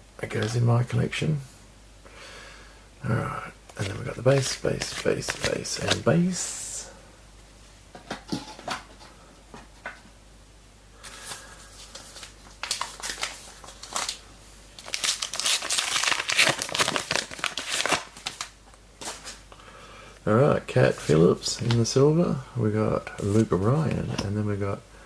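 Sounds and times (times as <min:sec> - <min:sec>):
wrapper crinkling and tearing: 0:03.8 - 0:06.1, 0:11.2 - 0:14.2, 0:14.8 - 0:19.4.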